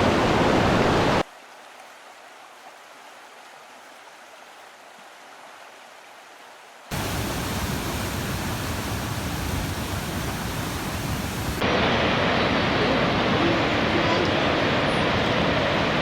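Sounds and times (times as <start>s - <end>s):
waterfall rushing: 0.0s - 1.2s, 6.9s - 16.0s.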